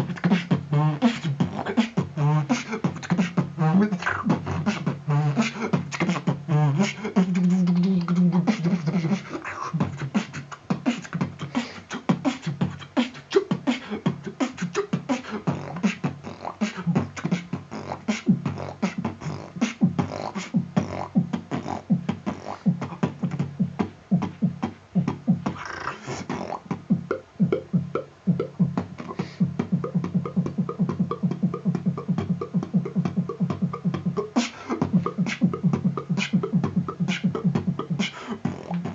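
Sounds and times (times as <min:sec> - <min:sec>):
beatboxing: 0:00.0 - 0:38.9.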